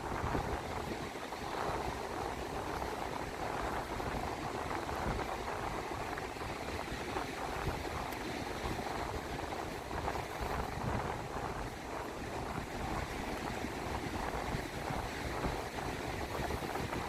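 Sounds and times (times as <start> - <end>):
sea surf: 0.0 - 17.0
wind buffeting rumble: 0.0 - 17.0
wind on microphone: 0.0 - 17.0.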